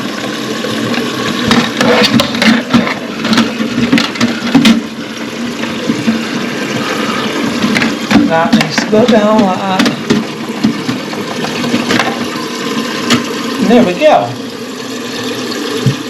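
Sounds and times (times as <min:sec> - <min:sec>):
water running in toilet cistern: 0:00.0 - 0:16.0
plastic clicks and knocks: 0:00.9 - 0:04.9, 0:07.6 - 0:12.3.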